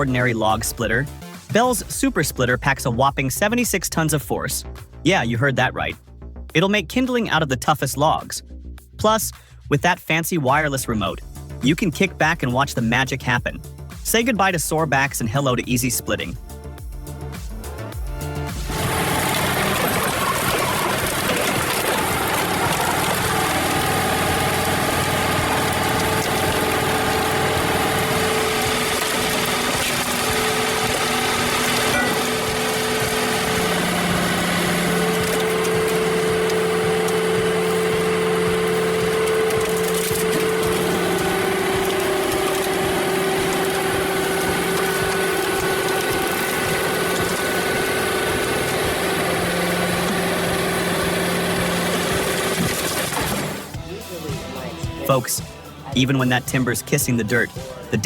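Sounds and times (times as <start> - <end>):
engine-driven machinery running: 18.4 - 54.7.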